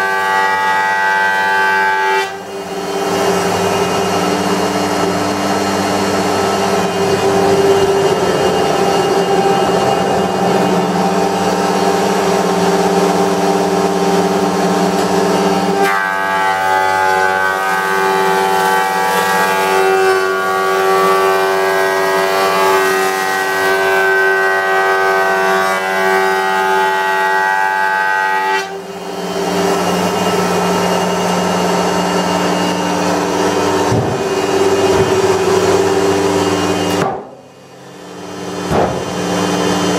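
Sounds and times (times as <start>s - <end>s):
planer machine hum: 0.0s - 39.9s.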